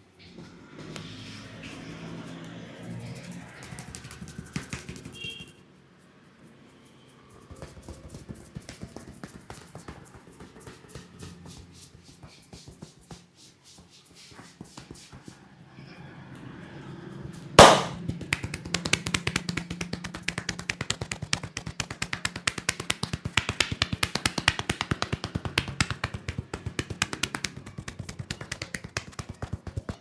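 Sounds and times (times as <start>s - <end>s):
hard hand slap: 17.6s - 29.5s
hands tapping on head: 17.6s - 30.0s.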